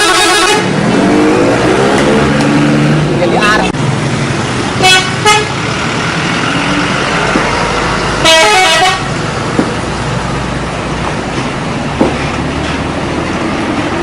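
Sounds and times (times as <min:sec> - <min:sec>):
bus musical horn: 0:00.0 - 0:01.0, 0:04.8 - 0:05.6, 0:08.2 - 0:09.2
traffic noise: 0:00.0 - 0:14.0.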